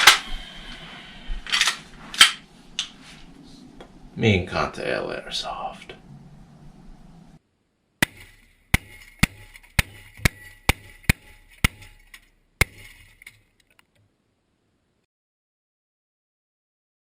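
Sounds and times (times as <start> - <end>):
sharp cracks with high ring: 8.0 - 13.6.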